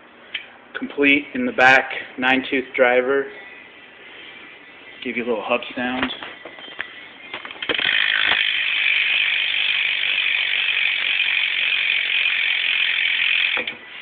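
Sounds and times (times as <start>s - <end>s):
bicycle hub ratcheting buzz: 7.4s - 14.0s
bicycle hub clicks: 7.6s - 13.8s.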